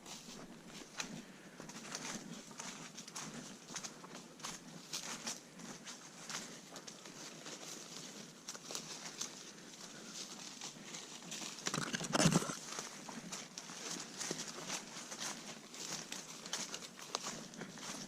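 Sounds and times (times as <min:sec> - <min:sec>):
footsteps crunching on trail: 0:00.0 - 0:18.0.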